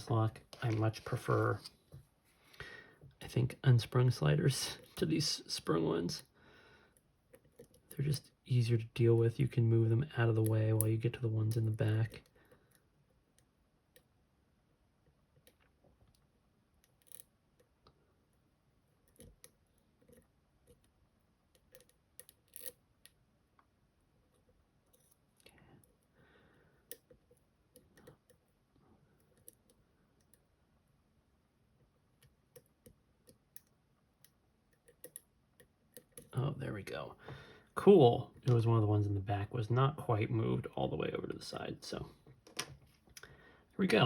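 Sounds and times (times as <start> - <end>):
lock picks clicking and scraping: 16.8 - 17.3, 21.5 - 22.8, 34.7 - 36.3.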